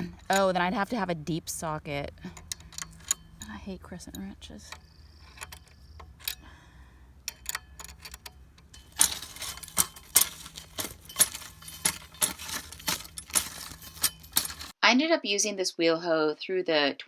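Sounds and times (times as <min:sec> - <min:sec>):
wrench clinking on metal nut: 0:00.0 - 0:01.1, 0:02.3 - 0:06.4, 0:07.2 - 0:14.8.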